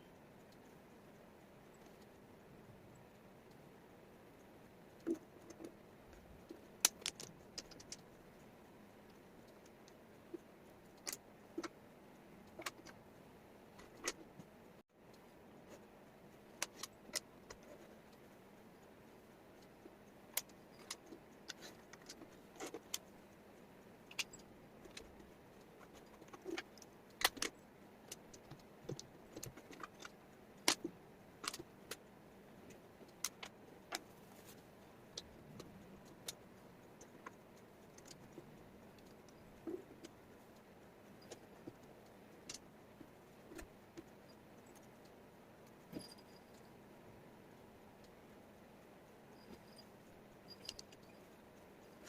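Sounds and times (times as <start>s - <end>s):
wooden puzzle pieces clicking: 6.8s - 8.0s.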